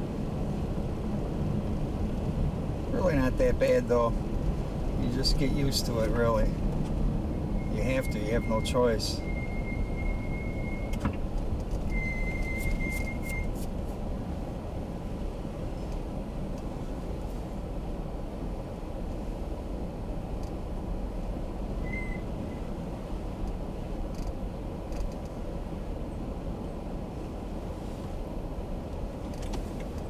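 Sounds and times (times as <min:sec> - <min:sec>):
car road and engine rumble: 0:00.0 - 0:30.0
light clicks: 0:23.4 - 0:25.4.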